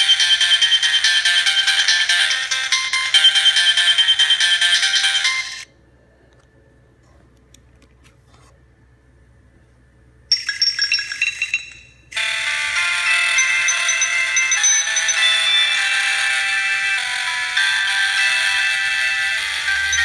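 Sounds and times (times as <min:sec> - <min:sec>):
phone ringtone melody: 0:00.0 - 0:05.6, 0:10.3 - 0:20.0.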